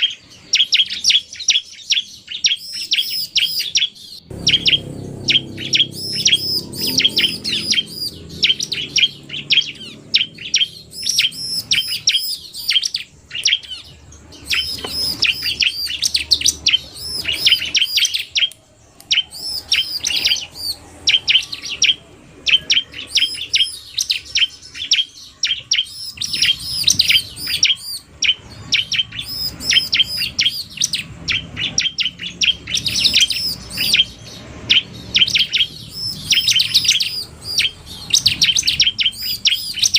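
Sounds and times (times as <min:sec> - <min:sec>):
bird high sharp chirps: 0:00.0 - 0:39.9.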